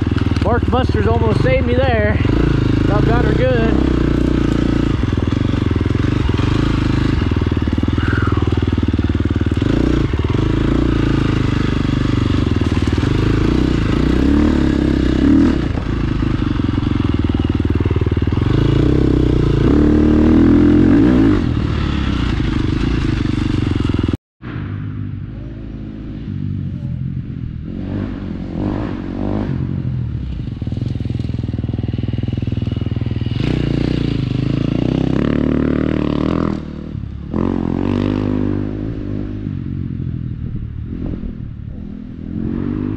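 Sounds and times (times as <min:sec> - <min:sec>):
motorcycle clatter: 0:00.0 - 0:19.7, 0:21.0 - 0:24.2
motorcycle engine revving: 0:00.0 - 0:42.9.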